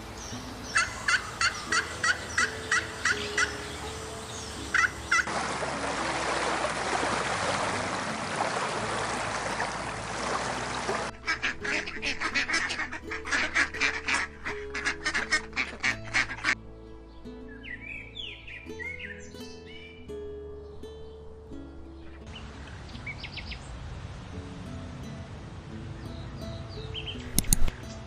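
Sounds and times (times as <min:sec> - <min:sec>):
flock of birds honking: 0:00.6 - 0:05.4.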